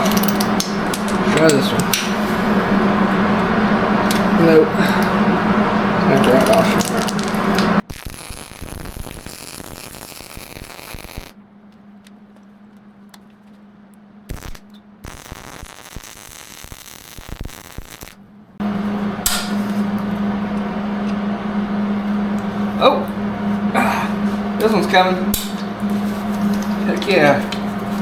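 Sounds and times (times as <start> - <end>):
welder crackling: 0.0 - 11.4, 14.3 - 18.2, 24.6 - 28.0
steady low hum: 0.0 - 28.0.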